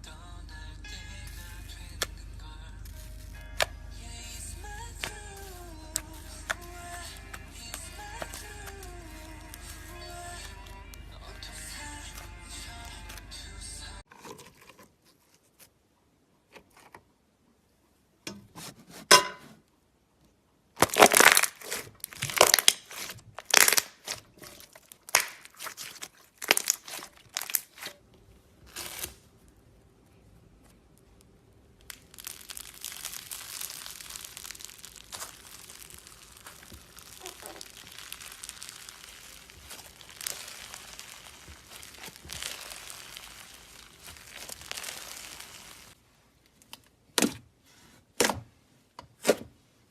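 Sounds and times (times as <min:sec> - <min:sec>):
slime crackling and popping: 0:02.8 - 0:13.3, 0:20.8 - 0:27.9, 0:30.9 - 0:46.0.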